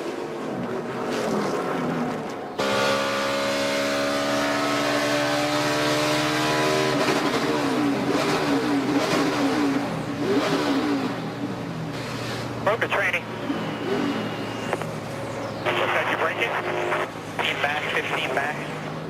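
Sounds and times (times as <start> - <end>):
race car engine at full throttle: 0.0 - 19.0.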